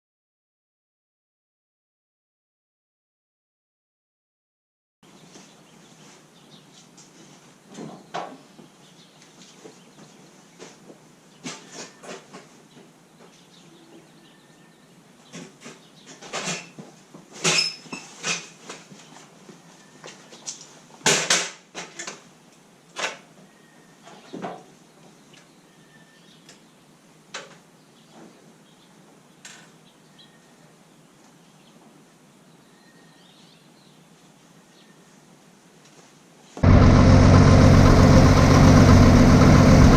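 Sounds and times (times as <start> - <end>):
faint steady background noise: 5.0 - 36.6.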